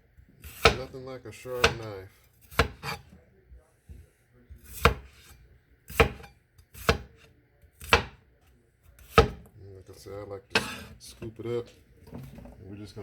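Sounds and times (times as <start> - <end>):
knife chopping on cutting board: 0.4 - 3.2, 3.9 - 8.3, 9.0 - 9.6, 10.5 - 11.0.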